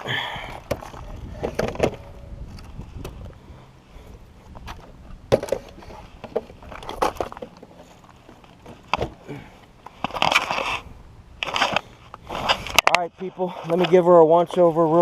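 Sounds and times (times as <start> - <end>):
clicks and knocks of toy truck: 0.6 - 2.0, 4.6 - 9.2
rustling: 0.8 - 15.0.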